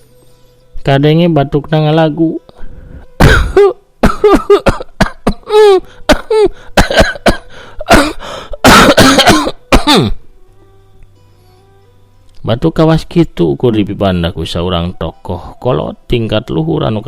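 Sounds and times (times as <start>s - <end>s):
man coughing: 3.2s - 10.2s.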